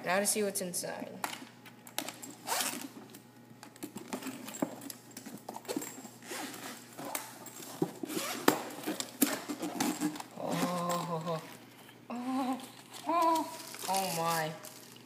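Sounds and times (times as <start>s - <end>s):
zipper being opened: 2.4s - 2.9s, 5.7s - 7.3s, 8.0s - 11.3s.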